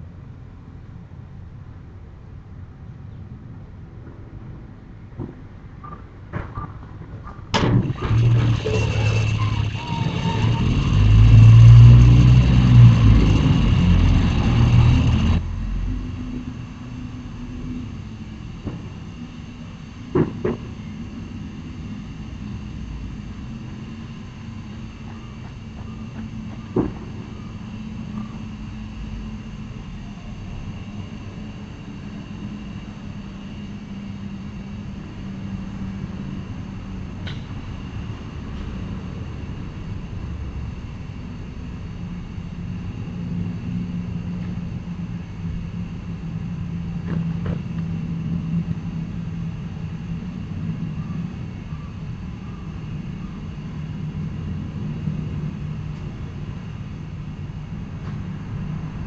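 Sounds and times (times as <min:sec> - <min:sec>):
constant hum: 0:00.0 - 0:59.0
low background rumble: 0:00.0 - 0:59.0.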